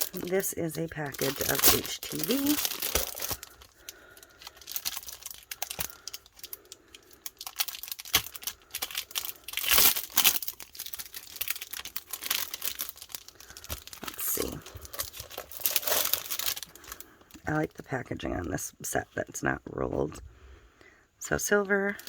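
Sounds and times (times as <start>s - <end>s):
packaging crinkling and rustling: 0.0s - 17.6s.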